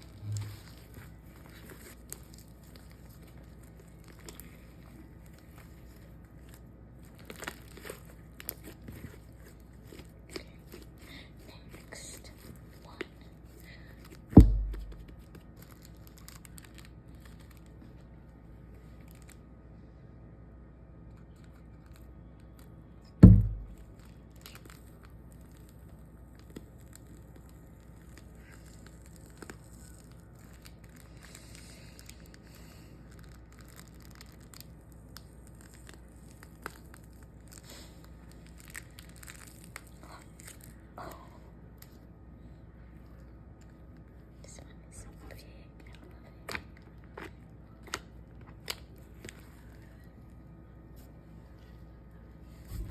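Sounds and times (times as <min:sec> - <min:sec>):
slime crackling and crinkling: 0:00.0 - 0:19.5, 0:21.3 - 0:42.1, 0:42.7 - 0:52.9
heavy deep thump: 0:14.4 - 0:15.2, 0:23.2 - 0:23.9.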